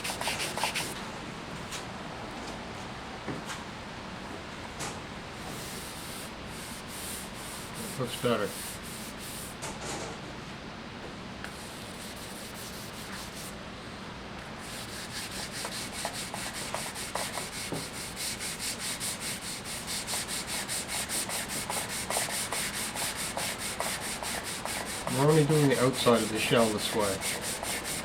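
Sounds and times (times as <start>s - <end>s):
wet sanding rubbing hiss: 5.6s - 9.6s, 11.6s - 13.6s, 14.6s - 28.0s.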